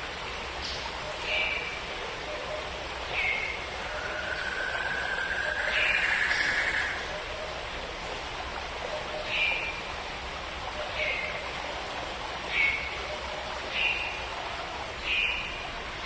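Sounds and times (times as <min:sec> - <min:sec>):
background hiss: 0:00.0 - 0:16.0
bird call sliding downward: 0:04.0 - 0:07.1.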